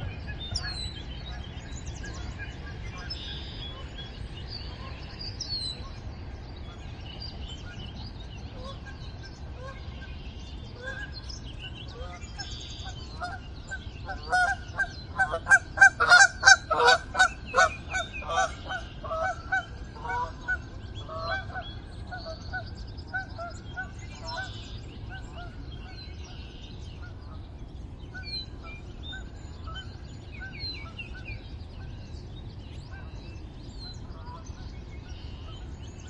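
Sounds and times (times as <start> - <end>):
geese honking: 12.8 - 21.6.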